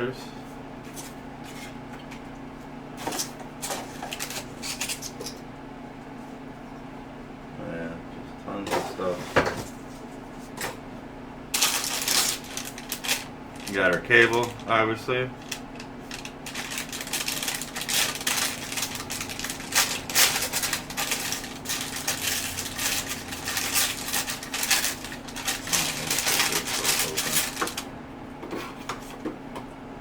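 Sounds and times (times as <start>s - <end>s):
plastic packaging crinkling: 11.6s - 14.8s, 15.4s - 27.9s.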